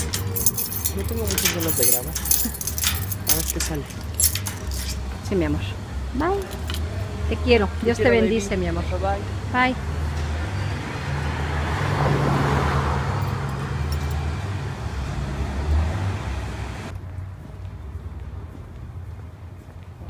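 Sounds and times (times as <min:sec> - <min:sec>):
car engine rumble: 0:00.0 - 0:10.7
road noise: 0:00.0 - 0:20.0.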